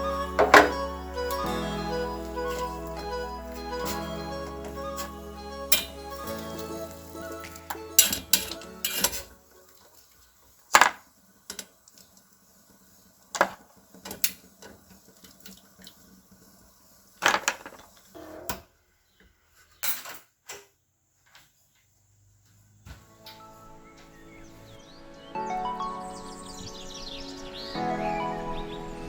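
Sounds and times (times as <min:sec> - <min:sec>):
dishes clinking and clattering: 0:06.6 - 0:09.4.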